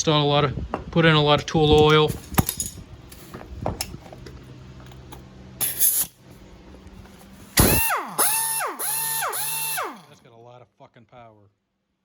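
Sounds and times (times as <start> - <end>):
pneumatic impact wrench whine: 5.6 - 6.2, 7.5 - 10.2.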